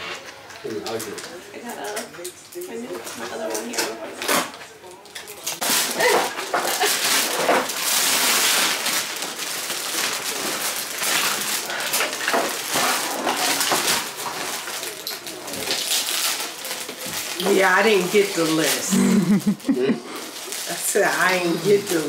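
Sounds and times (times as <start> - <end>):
paper rustling and crinkling: 3.0 - 22.0
paper tearing: 5.5 - 19.7.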